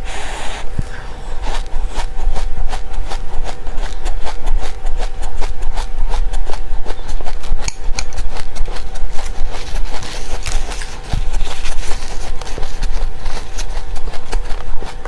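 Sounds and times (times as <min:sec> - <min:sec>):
seeds being chewed: 0:00.6 - 0:15.0.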